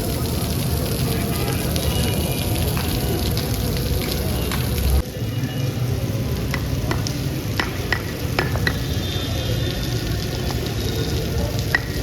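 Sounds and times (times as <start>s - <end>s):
heavy rain hissing: 0.0s - 12.0s
drop taps: 6.5s - 8.8s.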